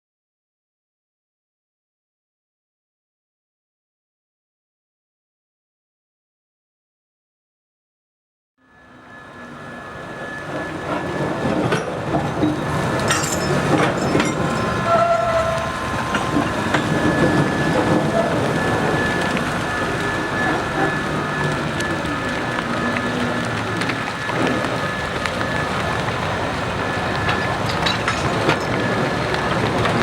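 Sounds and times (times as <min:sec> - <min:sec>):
train wheels clattering over rails: 0:09.8 - 0:30.0
thin high squeal: 0:12.4 - 0:21.4.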